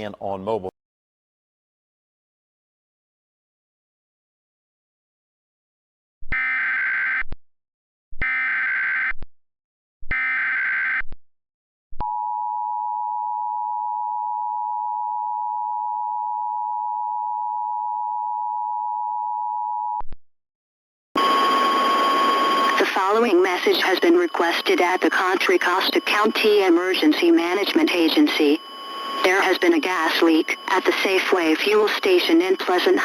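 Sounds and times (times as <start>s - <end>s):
data header bursts: 21.2s - 33.0s
steady attention tone: 21.2s - 33.0s.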